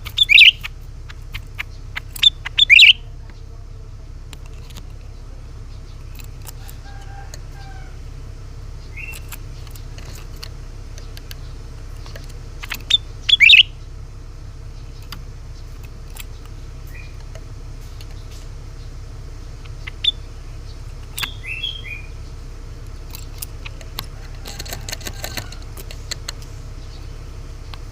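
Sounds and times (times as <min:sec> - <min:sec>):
bird chirping: 0:00.0 - 0:27.9
steady low hum: 0:00.0 - 0:27.9
faint clicks: 0:09.0 - 0:13.0, 0:22.8 - 0:27.9.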